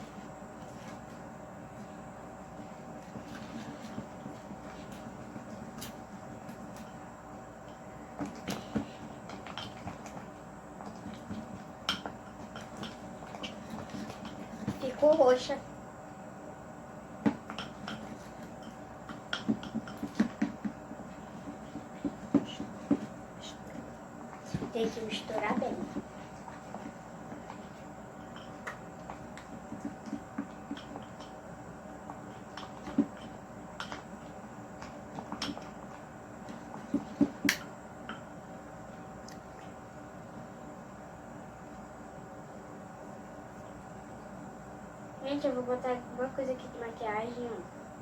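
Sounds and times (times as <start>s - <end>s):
spatula stirring slime: 8.1s - 15.6s, 17.2s - 39.8s.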